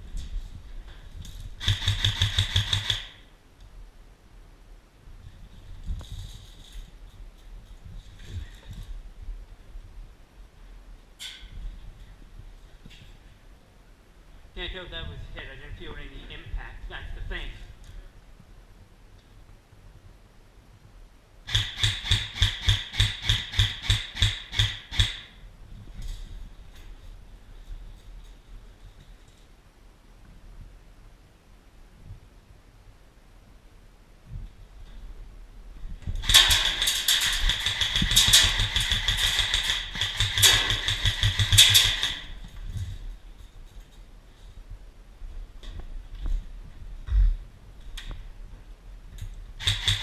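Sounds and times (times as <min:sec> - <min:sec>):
airsoft rifle shots: 0:01.6 - 0:03.2, 0:21.5 - 0:25.4, 0:36.2 - 0:42.4, 0:49.6 - 0:50.0.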